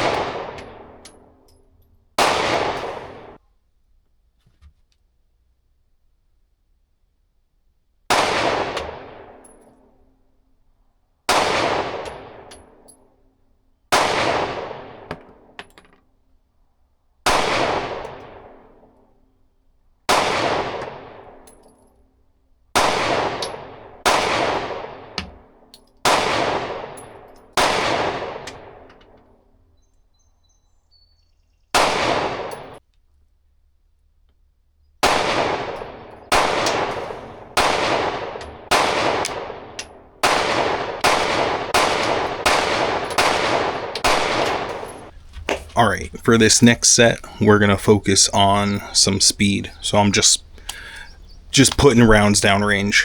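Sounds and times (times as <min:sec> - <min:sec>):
pistol shots echoing: 0:00.0 - 0:01.4, 0:02.2 - 0:03.4, 0:08.1 - 0:09.6, 0:11.3 - 0:12.8, 0:13.9 - 0:15.6, 0:17.3 - 0:18.9, 0:20.1 - 0:21.6, 0:22.8 - 0:29.5, 0:31.8 - 0:32.8, 0:35.0 - 0:53.0.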